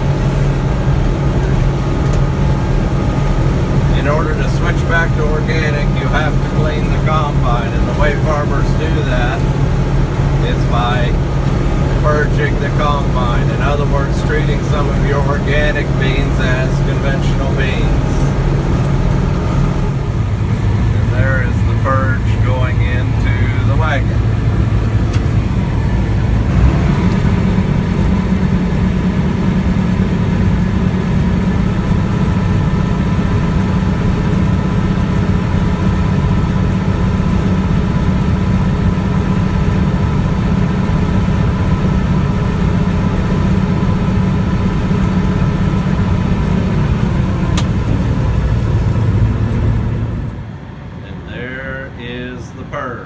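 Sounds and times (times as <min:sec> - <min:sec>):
auger unloading beans: 0:00.0 - 0:27.8
combine harvester engine running: 0:00.0 - 0:53.0
steady machine whine: 0:00.0 - 0:53.0.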